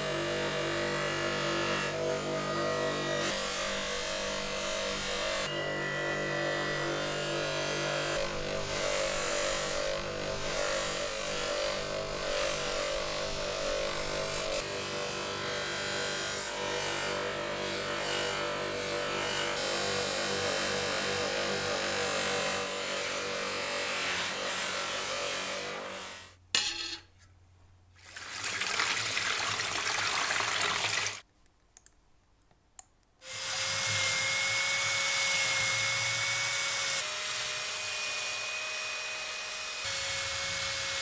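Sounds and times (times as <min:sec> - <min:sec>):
power tool grinding: 0:00.0 - 0:26.3.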